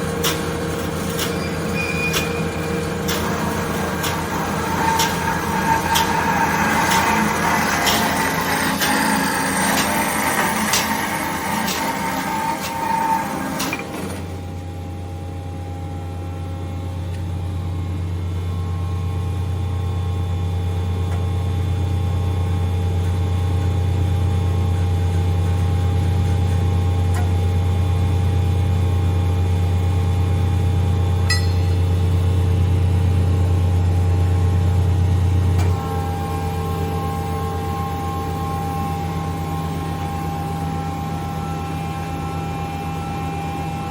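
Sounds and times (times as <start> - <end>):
bandsaw motor hum: 0.0 - 14.7.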